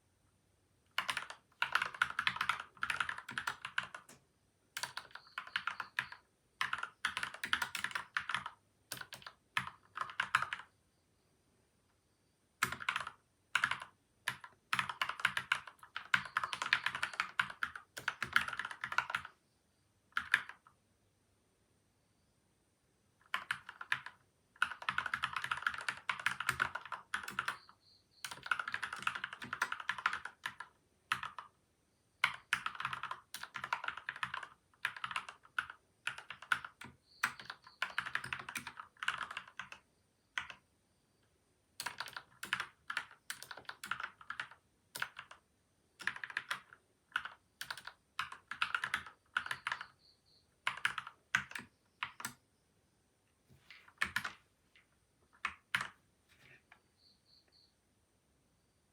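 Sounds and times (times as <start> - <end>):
typing on mechanical keyboard: 0.9 - 4.2, 4.8 - 10.7, 12.6 - 19.4, 20.2 - 20.8, 23.2 - 31.6, 32.2 - 39.8, 40.4 - 40.6, 41.8 - 45.4, 46.0 - 50.0, 50.6 - 52.4, 53.8 - 54.4, 55.4 - 56.0.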